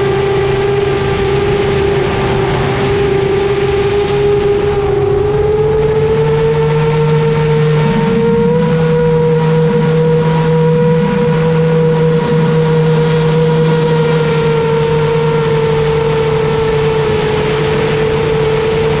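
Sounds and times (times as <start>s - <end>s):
drone propellers buzzing: 0.0s - 19.0s.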